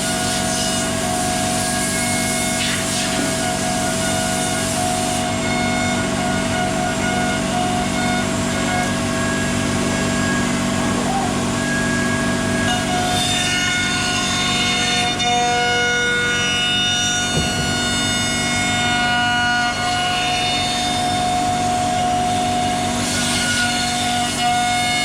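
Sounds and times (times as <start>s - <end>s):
router spindle whine: 0.0s - 25.0s
single knock: 17.3s - 18.7s.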